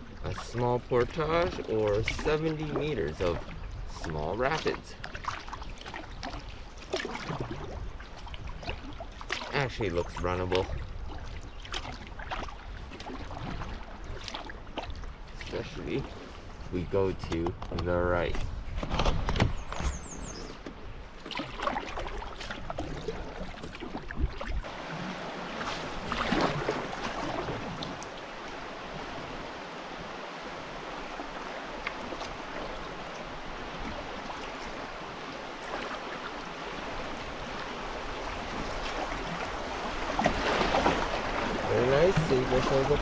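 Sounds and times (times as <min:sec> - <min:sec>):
splashes and knocks: 0:00.3 - 0:09.7, 0:10.4 - 0:16.2, 0:17.2 - 0:20.0, 0:20.6 - 0:28.6, 0:30.9 - 0:43.0
water rushing over rapids: 0:24.6 - 0:43.0.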